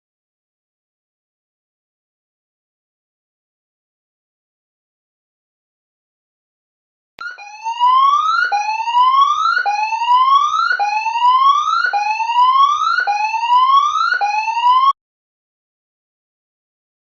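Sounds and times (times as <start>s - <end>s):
electronic siren whooping: 7.2s - 15.0s.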